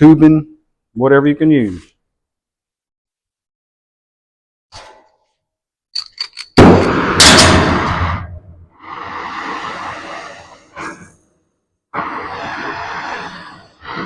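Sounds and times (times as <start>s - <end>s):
cutting torch gas blast: 6.6s - 11.2s, 11.9s - 14.0s
cutting torch hissing: 8.8s - 11.1s, 11.9s - 14.0s
short gas puff: 8.8s - 14.0s.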